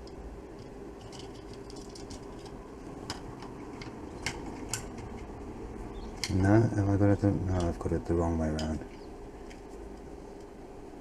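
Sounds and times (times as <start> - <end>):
small parts clicking and tapping: 0.0 - 5.3, 7.4 - 10.5
steady low hum: 0.0 - 11.0.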